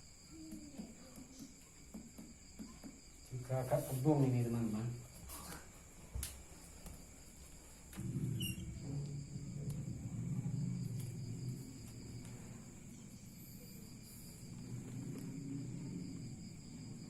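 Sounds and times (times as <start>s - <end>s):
low rough rumbling: 8.0s - 17.0s
high-pitched insect chirring: 8.2s - 17.0s.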